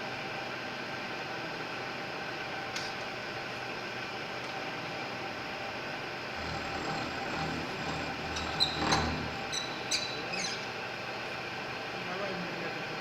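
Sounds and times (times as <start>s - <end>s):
milling machine humming: 5.6s - 11.9s.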